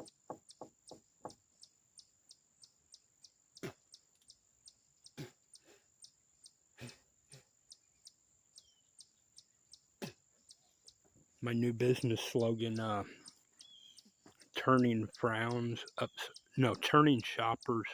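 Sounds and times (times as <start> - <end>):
insects chirping: 0.0 - 17.9.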